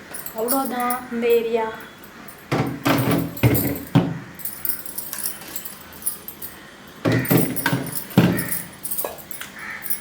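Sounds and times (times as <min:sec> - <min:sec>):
plastic containers rattling and clinking: 0:02.5 - 0:10.0.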